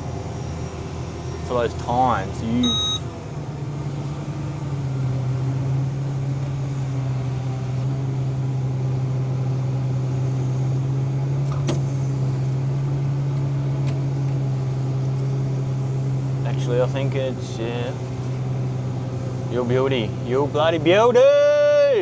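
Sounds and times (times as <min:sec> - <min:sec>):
tractor engine droning: 0:00.0 - 0:22.0.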